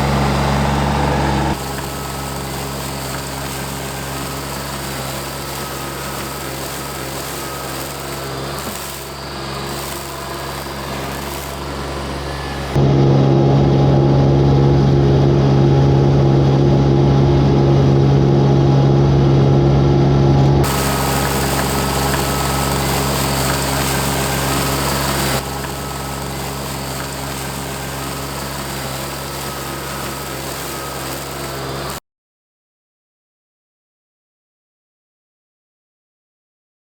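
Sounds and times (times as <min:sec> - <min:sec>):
skid steer engine running: 0:00.0 - 0:32.0.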